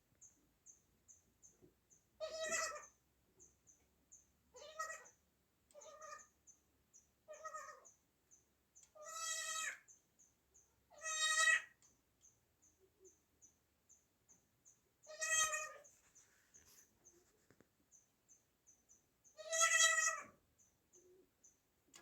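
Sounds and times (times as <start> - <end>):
goat kid bleating: 2.2 - 3.0, 4.5 - 6.4, 7.3 - 8.0, 8.9 - 9.9, 10.9 - 11.8, 15.0 - 15.9, 19.4 - 20.4.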